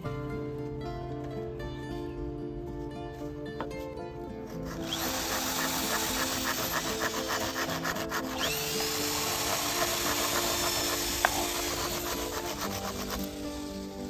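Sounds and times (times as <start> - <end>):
background music with held notes: 0.0 - 14.0
grinding sawing noise: 4.4 - 14.0
rhythmic rasping on bamboo: 4.4 - 14.0.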